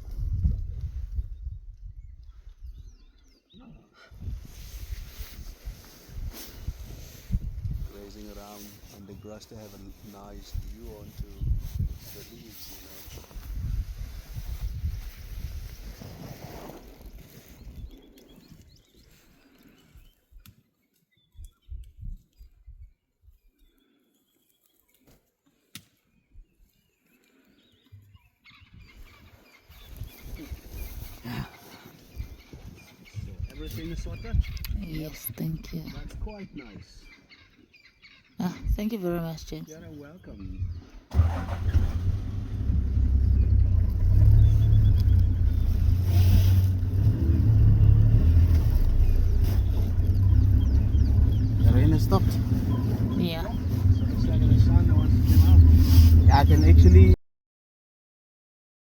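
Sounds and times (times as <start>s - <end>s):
vehicle engine low rumble: 4.2s - 16.0s, 40.4s - 57.2s
faint bird chirps: 48.7s - 57.2s.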